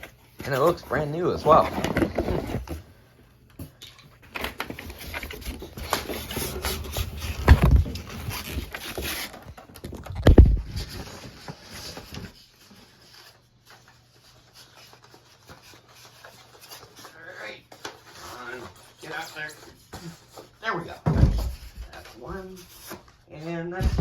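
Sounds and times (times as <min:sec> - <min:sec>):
cardboard packaging rustling: 0:00.0 - 0:03.0, 0:04.2 - 0:20.6
heavy thumps: 0:23.8 - 0:24.0.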